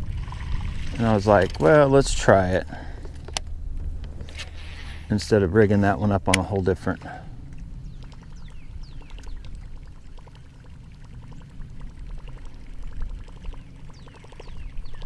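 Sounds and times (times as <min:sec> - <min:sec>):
water gurgling: 0:00.0 - 0:02.6, 0:06.0 - 0:15.0
fishing reel ticking: 0:08.0 - 0:15.0.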